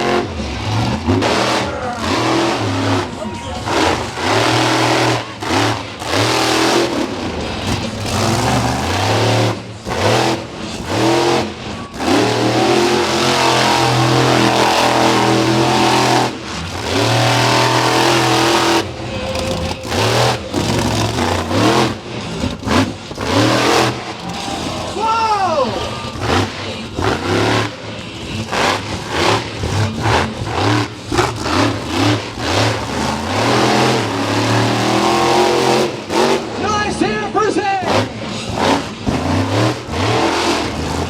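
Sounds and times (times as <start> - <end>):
monster truck engine revving: 0.0 - 41.0.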